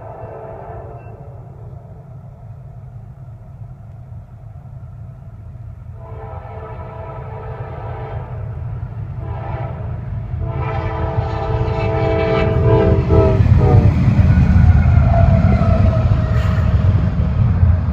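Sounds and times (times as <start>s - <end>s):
locomotive air horn blasts: 0.0s - 1.7s, 6.0s - 16.0s
train rumbling: 0.0s - 17.9s.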